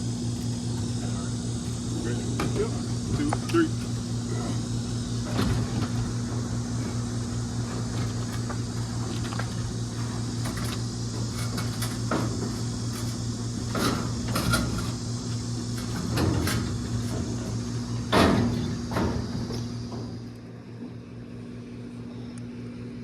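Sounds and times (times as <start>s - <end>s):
steady low hum: 0.0s - 23.0s
vending machine knocks and clunks: 1.7s - 4.1s, 5.1s - 20.3s.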